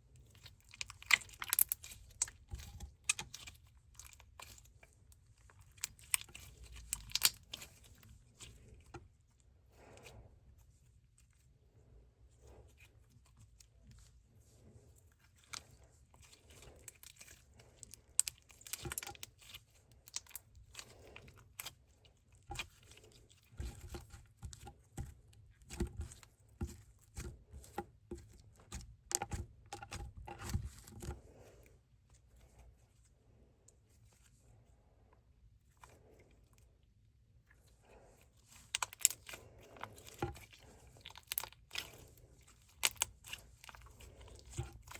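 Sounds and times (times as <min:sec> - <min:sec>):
slime crackling and popping: 0:00.2 - 0:04.7, 0:05.6 - 0:07.9, 0:38.6 - 0:44.9.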